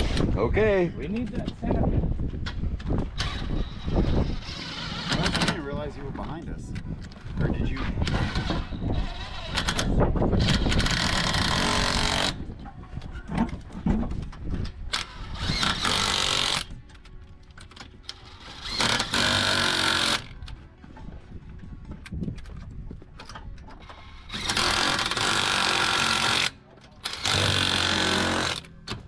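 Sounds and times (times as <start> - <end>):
impact wrench running: 18.4 - 20.3, 24.3 - 28.7.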